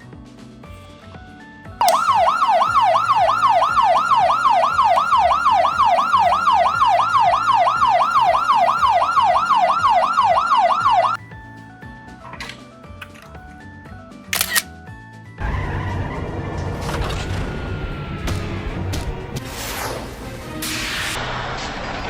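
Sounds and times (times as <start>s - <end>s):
background music: 0.0s - 16.4s
toy electronic siren yelping: 1.8s - 11.2s.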